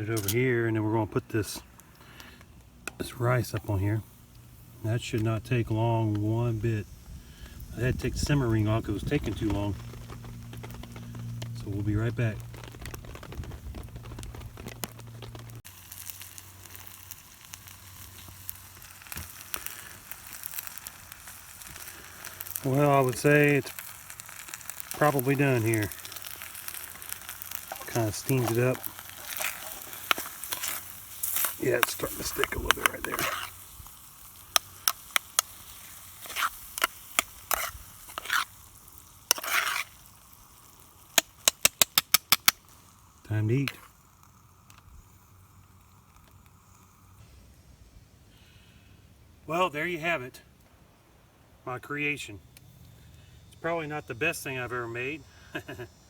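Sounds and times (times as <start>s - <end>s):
rice sizzling in a pan: 0.0s - 50.3s, 51.4s - 56.0s
metal spoon scraping mess tin: 27.7s - 33.6s, 39.3s - 39.9s.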